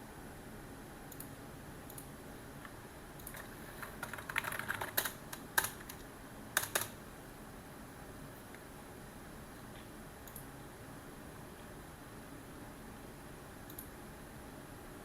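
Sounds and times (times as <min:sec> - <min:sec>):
faint steady hiss: 0:00.0 - 0:15.0
typing on computer keyboard: 0:03.2 - 0:06.0, 0:06.6 - 0:07.0.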